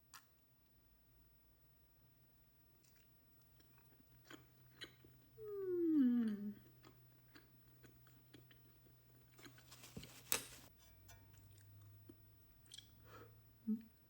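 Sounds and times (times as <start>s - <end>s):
soft chewing with wet clicks: 2.8s - 5.4s, 6.2s - 9.7s, 11.4s - 13.0s
person humming mmm: 5.4s - 6.7s, 13.6s - 14.0s.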